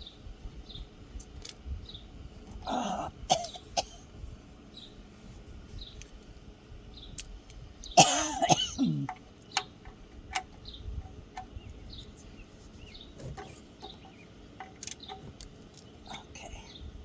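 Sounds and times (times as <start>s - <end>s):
man clearing his throat: 2.7s - 4.0s, 8.0s - 9.1s.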